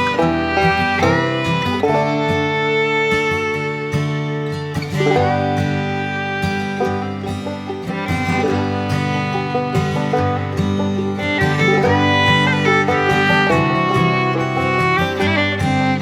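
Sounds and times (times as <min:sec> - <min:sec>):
upbeat acoustic string music: 0:00.0 - 0:16.0.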